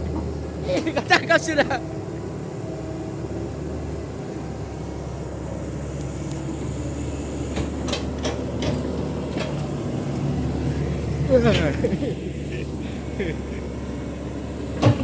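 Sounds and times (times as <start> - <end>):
excavator diesel engine running: 0.0 - 15.0
sharp clicks and knocks: 7.5 - 10.3.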